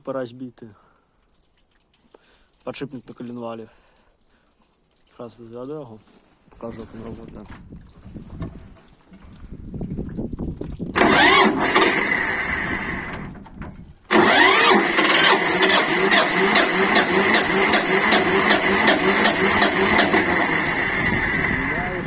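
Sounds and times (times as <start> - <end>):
diesel tractor engine starting: 10.9 - 22.0
engine idling with knock: 14.1 - 20.9.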